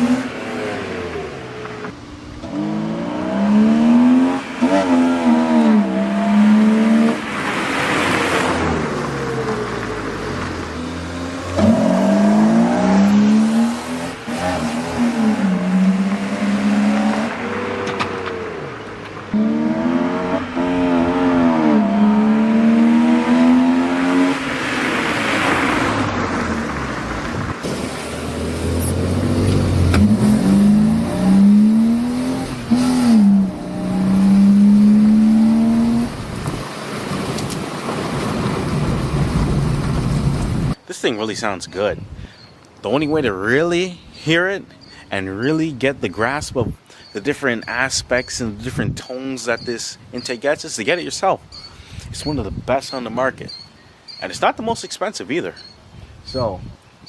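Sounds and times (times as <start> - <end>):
car engine revving: 0.0 - 40.8.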